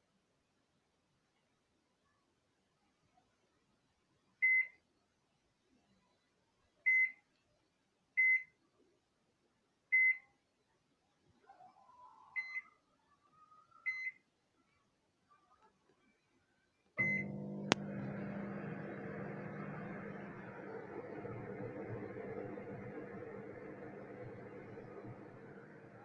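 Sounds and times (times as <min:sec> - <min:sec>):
microwave oven beeping: 0:17.0 - 0:26.0.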